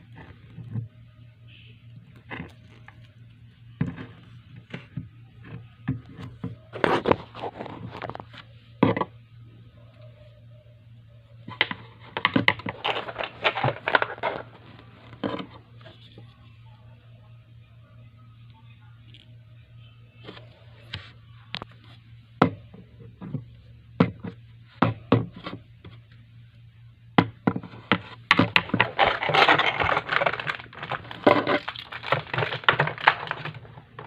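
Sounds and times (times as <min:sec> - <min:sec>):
packaging rustling and crinkling: 0:12.6 - 0:15.4, 0:28.4 - 0:34.0.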